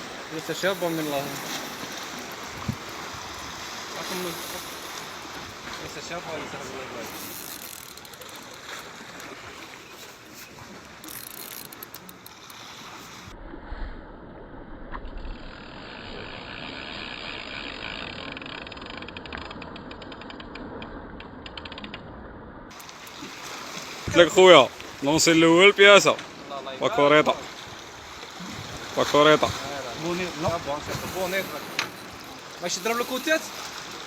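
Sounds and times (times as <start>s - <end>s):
fishing reel ratchet clicking: 0.5s - 2.5s, 3.3s - 5.4s, 7.0s - 9.3s, 11.0s - 12.6s, 15.4s - 20.9s, 21.5s - 22.0s, 31.0s - 33.8s.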